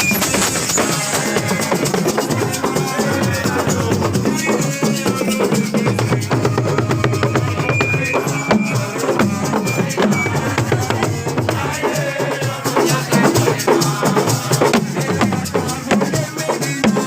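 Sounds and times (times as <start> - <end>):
lively music with fast drumming: 0.0 - 17.0.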